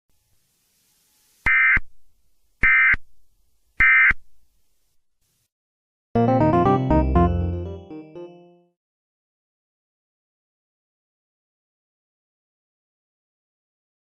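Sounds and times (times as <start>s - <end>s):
keyboard music: 6.2s - 8.8s.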